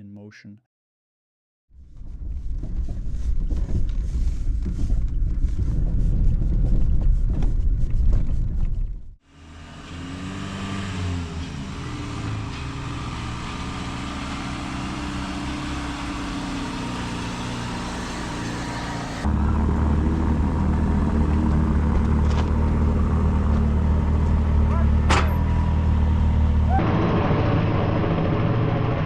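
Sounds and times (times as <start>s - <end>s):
vehicle engine running: 9.3s - 29.0s.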